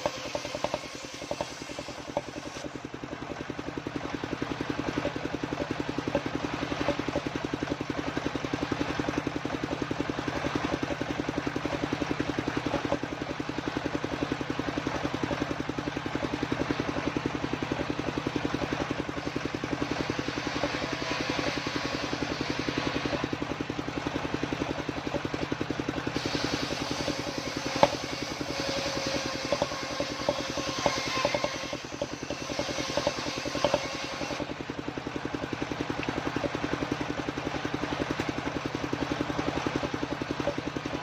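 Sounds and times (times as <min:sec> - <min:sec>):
circular saw engine running: 0:00.0 - 0:41.0.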